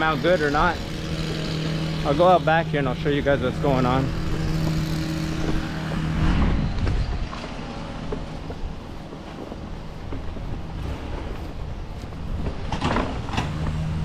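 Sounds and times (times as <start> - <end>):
motor running: 0.0 - 12.7
wind noise on microphone: 3.4 - 14.0.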